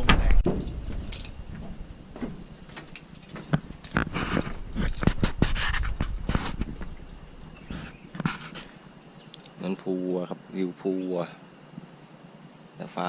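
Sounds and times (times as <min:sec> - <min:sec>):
footsteps walking: 0:00.0 - 0:08.8.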